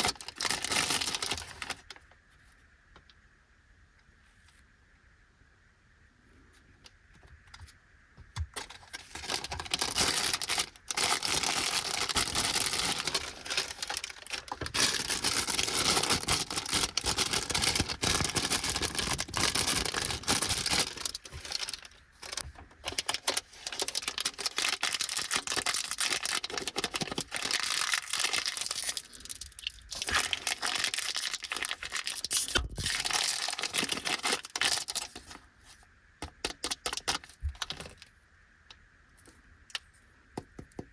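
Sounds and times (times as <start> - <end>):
plastic wrappers crinkling and tearing: 0.0 - 2.1, 8.4 - 35.4, 36.2 - 38.1.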